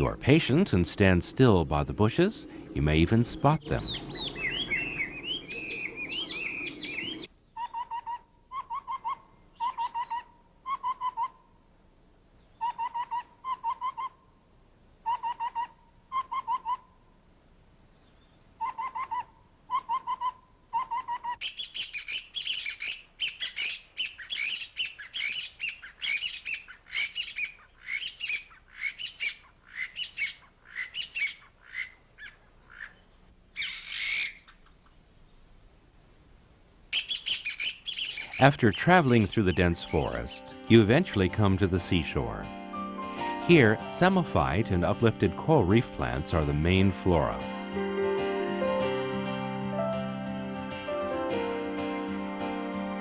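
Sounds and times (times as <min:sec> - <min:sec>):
rich varied birdsong: 0:00.0 - 0:07.9, 0:08.6 - 0:11.0, 0:11.6 - 0:14.0, 0:17.2 - 0:19.3, 0:21.4 - 0:35.5, 0:36.9 - 0:47.7
short low whistled bird phrases: 0:03.6 - 0:07.3.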